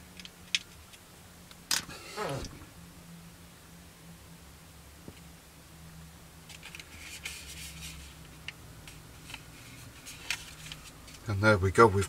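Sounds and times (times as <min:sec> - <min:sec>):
faint low hum: 0:00.0 - 0:12.0
hands handling plastic parts: 0:06.5 - 0:11.3.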